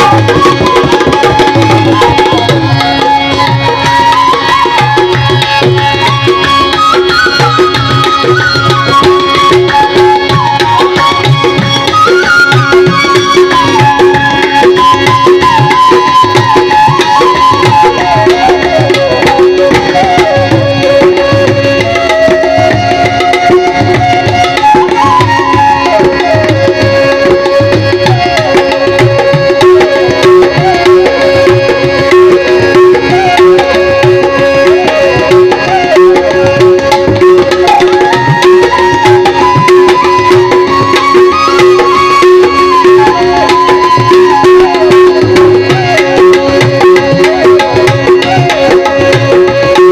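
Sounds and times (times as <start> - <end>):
tabla playing: 0.0 - 49.9
wandering melodic line: 0.0 - 49.9.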